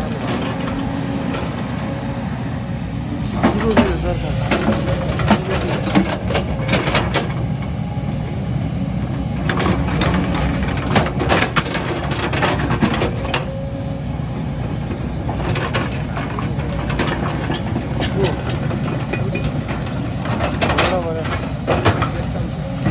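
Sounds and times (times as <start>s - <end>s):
excavator diesel engine running: 0.0s - 22.9s.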